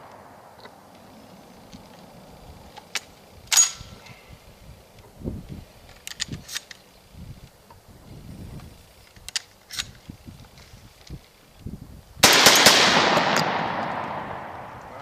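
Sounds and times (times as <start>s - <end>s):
shotgun action metal clicks: 5.9s - 6.8s.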